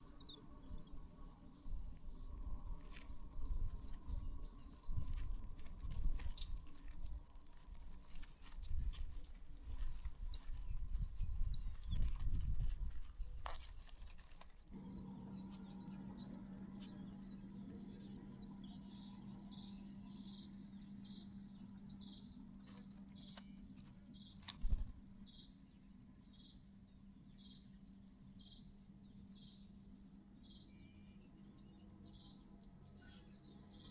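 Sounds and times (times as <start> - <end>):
baby birds chirping: 0.0 - 21.4, 22.7 - 24.9
low steady hum: 0.0 - 22.3.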